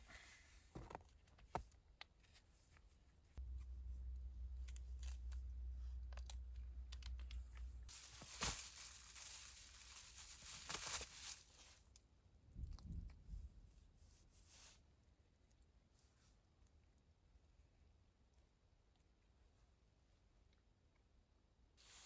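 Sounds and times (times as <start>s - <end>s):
crinkling rustling handling noises: 0.2s - 12.0s
low rumble: 3.4s - 7.9s.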